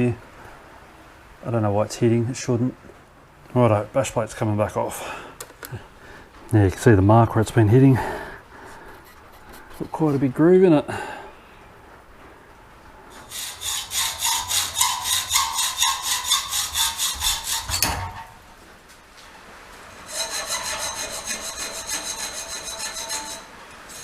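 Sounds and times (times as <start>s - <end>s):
hand tool rasping on workpiece: 13.2s - 18.2s, 20.0s - 24.0s.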